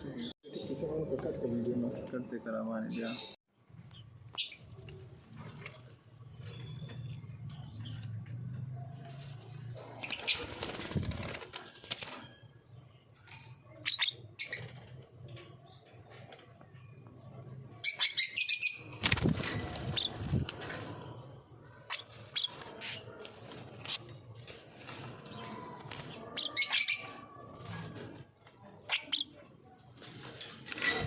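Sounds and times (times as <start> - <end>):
lovebirds chirping: 2.6 - 5.1
wings flapping: 9.0 - 12.4, 18.9 - 21.2.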